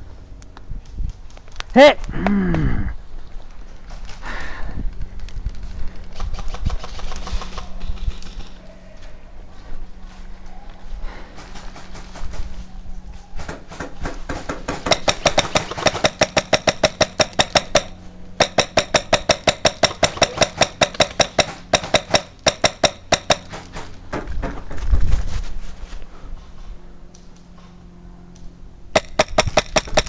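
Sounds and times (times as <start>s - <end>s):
airsoft gun rapid shots: 14.1s - 23.8s, 29.0s - 30.0s.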